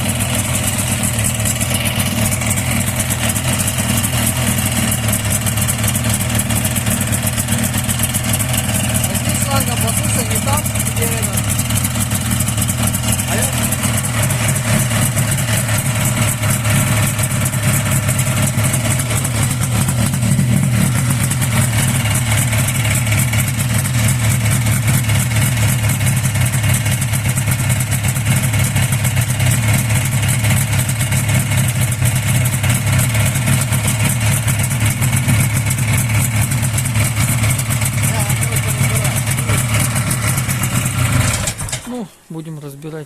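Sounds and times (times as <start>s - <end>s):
snowmobile engine idling with knock: 0.0s - 42.1s.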